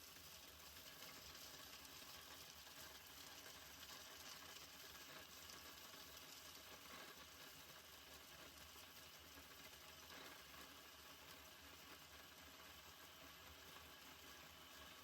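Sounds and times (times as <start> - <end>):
food sizzling on stove: 0.0 - 15.0.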